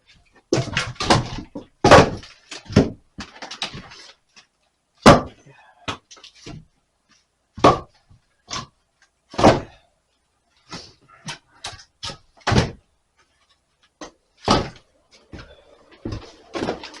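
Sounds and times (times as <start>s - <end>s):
sharp knocks and thuds: 0.5s - 3.9s, 7.6s - 8.7s, 9.3s - 9.8s, 10.7s - 12.8s, 14.0s - 17.0s.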